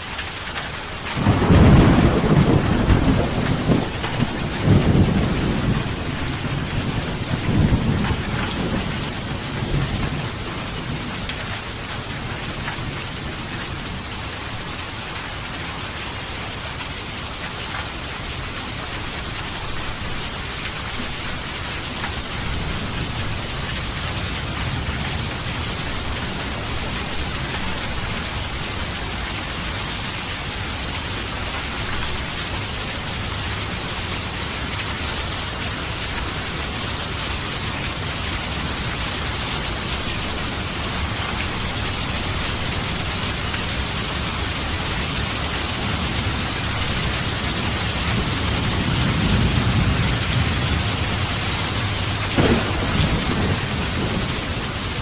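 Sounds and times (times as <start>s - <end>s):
steady rain: 0.0s - 55.0s
thunder rumbling: 1.0s - 14.1s, 37.6s - 55.0s.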